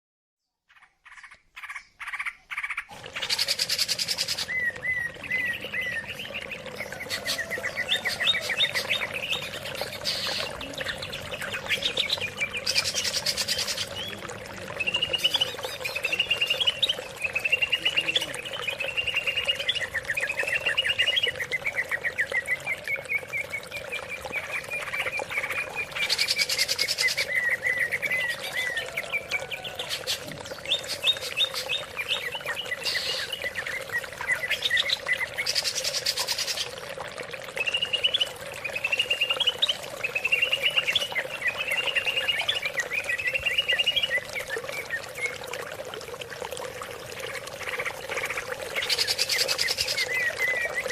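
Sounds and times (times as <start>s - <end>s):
bird singing chattering notes: 0.7s - 28.4s.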